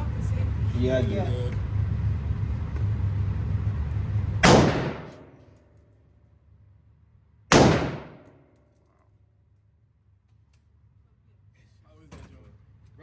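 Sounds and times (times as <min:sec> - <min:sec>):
gunshots with echo: 0:04.4 - 0:05.3, 0:07.5 - 0:08.4.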